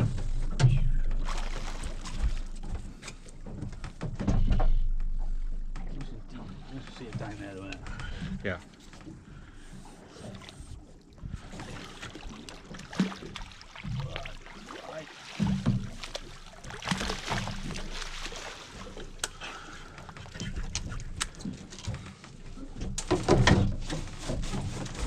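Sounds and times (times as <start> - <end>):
wind: 0.0 - 25.0
water wash: 1.1 - 2.7, 11.4 - 22.0
knocks and thumps: 22.9 - 25.0.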